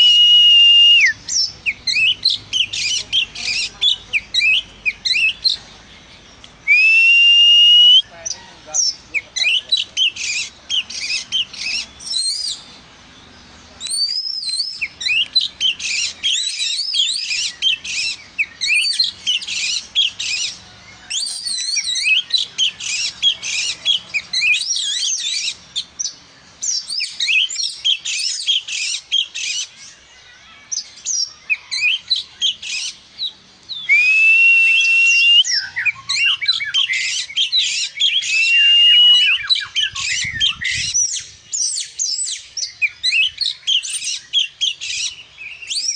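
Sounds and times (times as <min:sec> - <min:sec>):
bird song fast chirps and trills: 0:00.0 - 0:06.9, 0:07.6 - 0:45.9
drawn-out whistled notes: 0:06.6 - 0:08.0, 0:33.9 - 0:36.4.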